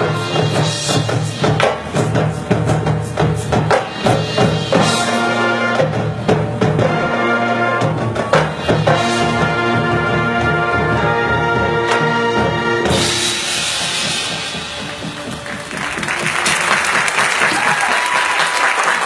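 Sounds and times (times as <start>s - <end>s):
wind and brass chords: 0.0s - 2.7s, 3.8s - 16.9s
sharp percussion hits: 0.0s - 7.2s, 11.9s - 17.3s.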